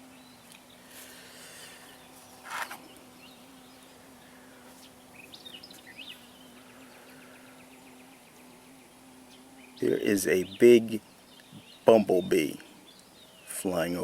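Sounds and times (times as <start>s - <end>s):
songbird chirping: 0.0s - 14.0s
handling rustle: 2.2s - 2.9s.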